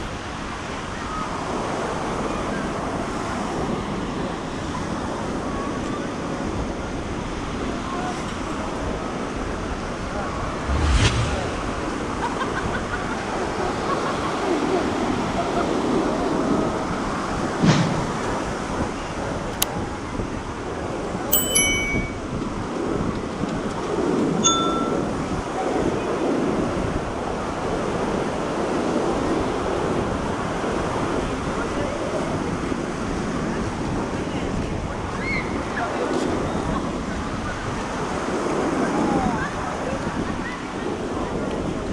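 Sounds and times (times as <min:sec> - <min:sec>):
wind: 0:00.0 - 0:41.9
wind on microphone: 0:10.3 - 0:12.7
short metallic ding: 0:21.3 - 0:22.3, 0:24.4 - 0:25.0.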